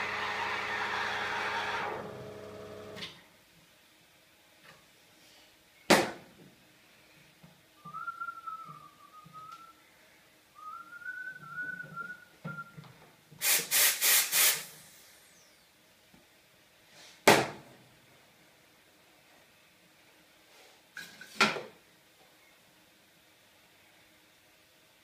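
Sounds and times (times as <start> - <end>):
person whistling: 7.8 - 9.8, 10.6 - 12.8.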